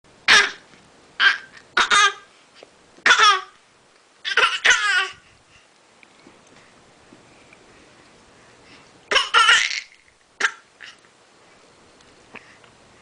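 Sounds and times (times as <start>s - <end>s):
baby fake coughing: 0.3s - 0.6s, 1.2s - 2.2s, 3.0s - 3.5s, 4.2s - 5.1s, 9.1s - 11.0s.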